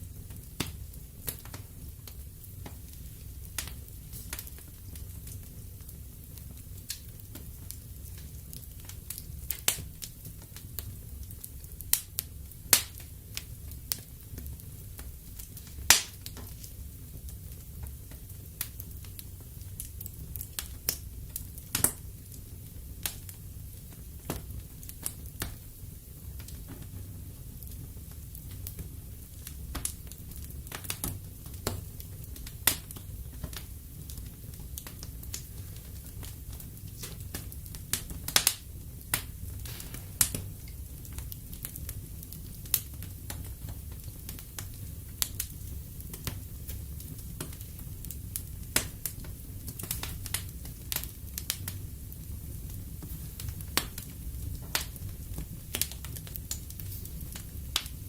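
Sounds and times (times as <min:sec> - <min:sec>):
fire rumbling: 0:00.0 - 0:58.0
logs crackling and popping: 0:00.1 - 0:58.0.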